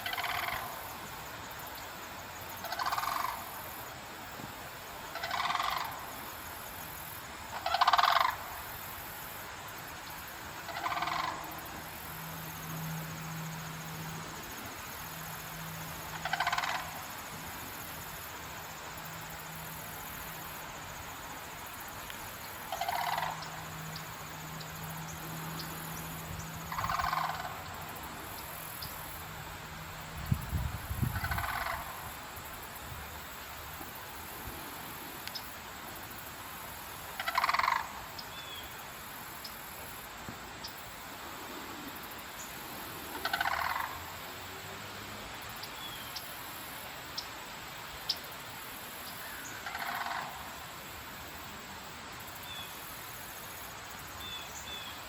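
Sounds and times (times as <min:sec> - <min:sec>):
cranes trumpeting calls: 0:00.0 - 0:01.0, 0:02.6 - 0:03.8, 0:05.0 - 0:06.3, 0:07.5 - 0:09.0, 0:10.2 - 0:18.3, 0:22.2 - 0:30.0, 0:30.9 - 0:32.5, 0:37.0 - 0:39.6, 0:41.0 - 0:44.4, 0:49.0 - 0:50.8.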